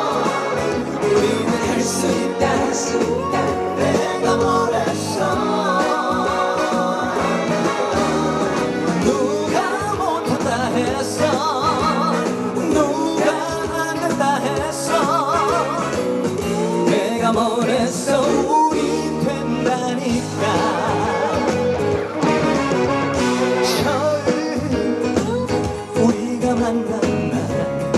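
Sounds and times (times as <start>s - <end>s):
man singing with vibrato: 0.0s - 22.2s, 23.5s - 27.9s
band accompaniment: 0.0s - 27.9s.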